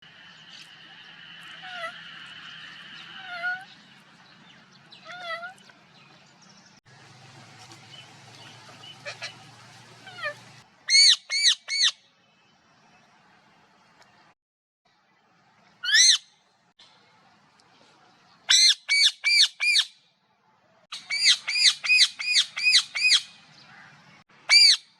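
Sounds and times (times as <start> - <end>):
high background hum: 0.1 - 10.8
parrot calls: 1.4 - 2.4, 3.0 - 3.7, 8.6 - 12.0
parrot squawks: 8.7 - 12.0, 15.8 - 16.3, 18.5 - 19.9, 20.9 - 23.3, 24.5 - 24.9.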